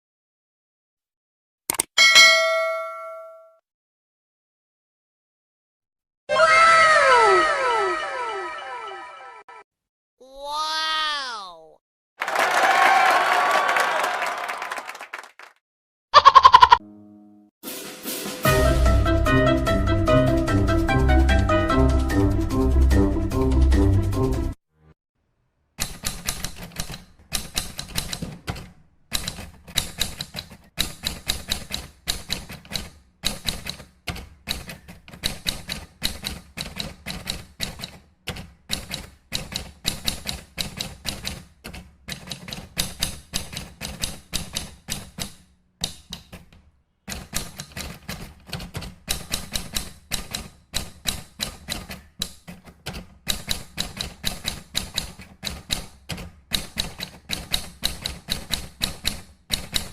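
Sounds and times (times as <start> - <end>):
typewriter key strikes: 25.8 - 59.9.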